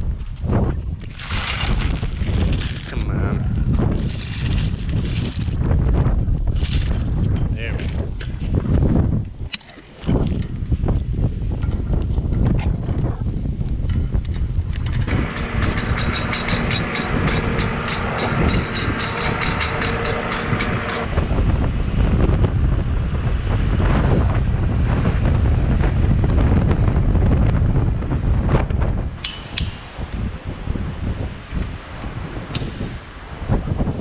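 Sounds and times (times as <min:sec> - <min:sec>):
wind buffeting microphone: 0:00.0 - 0:34.0
vehicle running: 0:14.9 - 0:23.8
rapid even ticking: 0:15.1 - 0:21.1.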